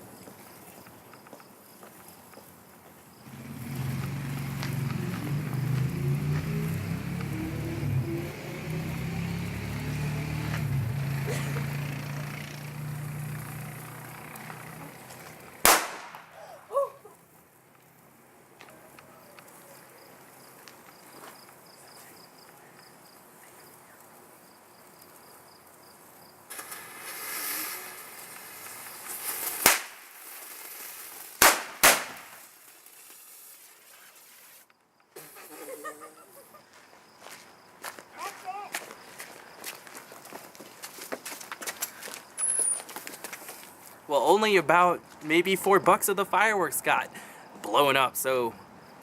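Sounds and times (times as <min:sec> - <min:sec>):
fireworks hissing: 0:01.7 - 0:16.6, 0:26.0 - 0:36.5
fireworks popping: 0:03.2 - 0:08.3, 0:11.4 - 0:16.5, 0:26.5 - 0:35.8
fireworks bangs: 0:14.4 - 0:16.5, 0:26.5 - 0:34.6.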